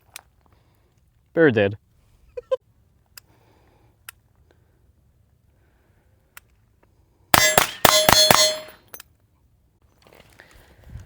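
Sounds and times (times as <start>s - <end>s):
rifle shots: 7.4s - 8.8s
metallic ringing: 7.4s - 9.0s.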